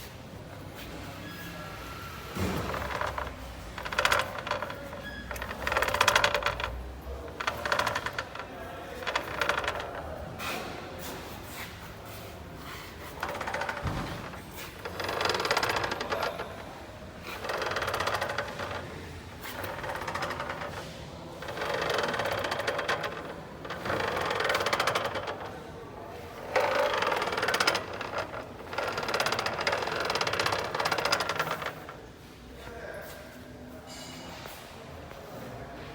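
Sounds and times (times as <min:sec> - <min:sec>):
gearbox rattling and clattering: 0:02.4 - 0:10.2, 0:13.0 - 0:25.6, 0:26.3 - 0:32.0.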